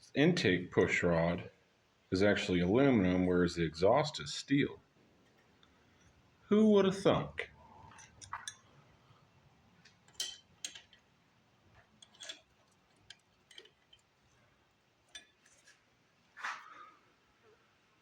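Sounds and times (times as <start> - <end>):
metal parts and tools clinking: 10.0 - 11.1, 11.7 - 15.8.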